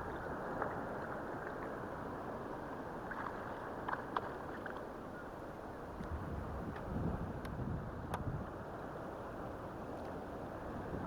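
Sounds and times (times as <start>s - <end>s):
water lapping against kayak hull: 0.0s - 5.3s
wind on microphone: 5.9s - 8.6s, 10.6s - 11.0s.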